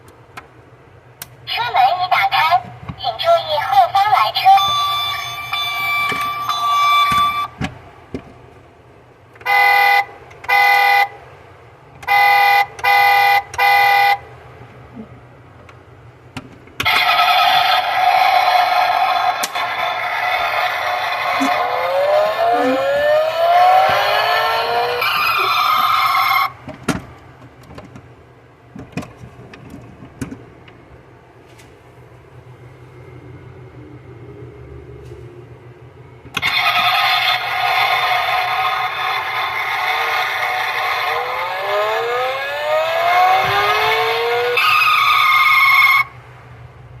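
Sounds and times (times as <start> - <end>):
electronic engine revving effect: 16.8 - 26.6, 36.4 - 46.2.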